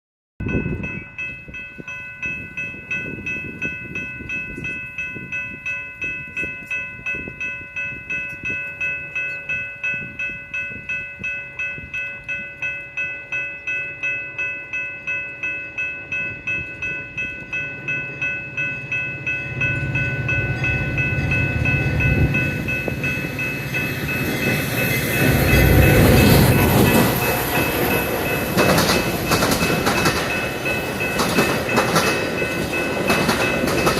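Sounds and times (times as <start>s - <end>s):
railroad crossing bell ringing: 0.4s - 33.9s
train rumbling past: 0.5s - 33.9s.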